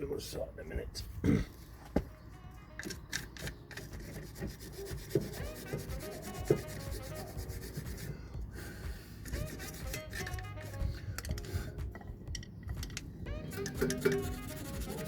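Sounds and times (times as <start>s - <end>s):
metal brake parts scraping: 2.8s - 4.8s, 9.2s - 14.4s.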